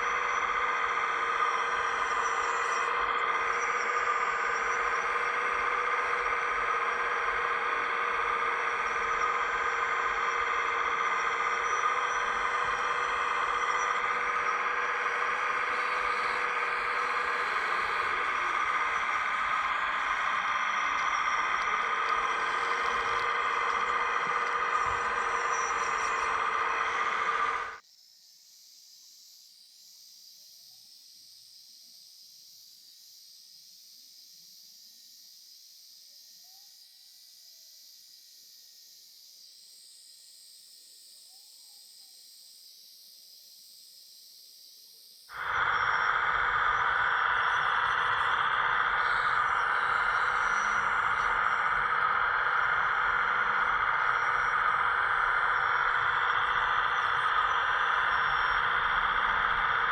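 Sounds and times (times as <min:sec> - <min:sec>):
hydraulic pump whining: 0:00.0 - 0:27.8, 0:45.4 - 0:59.9
faint hiss: 0:45.3 - 0:59.9.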